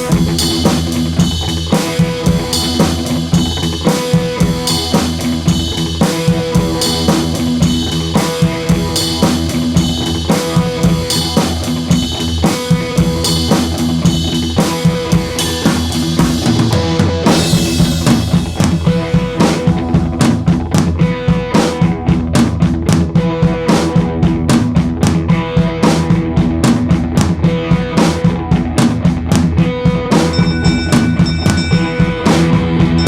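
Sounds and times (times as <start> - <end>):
drum kit beat: 0.0 - 33.0
sustained bass and synth: 28.4 - 33.0.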